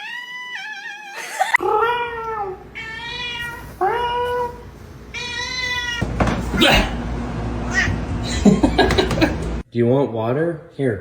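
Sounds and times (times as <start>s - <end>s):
cat meowing: 0.0s - 7.0s, 7.7s - 8.0s.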